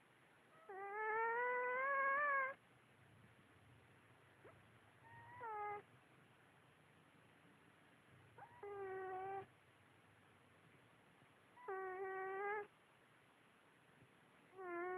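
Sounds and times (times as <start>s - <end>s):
cat meowing: 0.6s - 2.6s, 5.0s - 5.8s, 8.4s - 9.5s, 11.6s - 12.7s, 14.6s - 14.9s.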